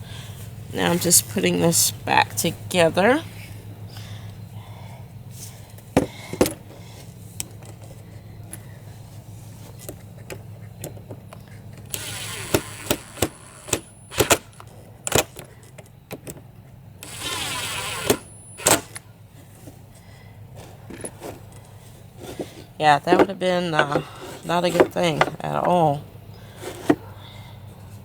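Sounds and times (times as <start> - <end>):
clicks and knocks of screws and wood: 9.6 - 19.0, 20.6 - 25.9
power drill driving screws: 11.9 - 14.6, 17.0 - 19.0.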